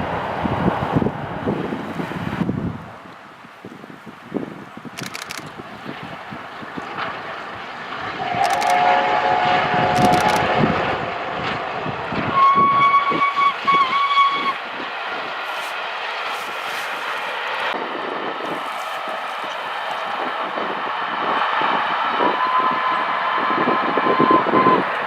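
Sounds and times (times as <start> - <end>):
train wheels clattering on rail: 5.0 - 17.8
train whistle blasts: 8.2 - 10.9, 12.3 - 14.6, 22.1 - 25.0.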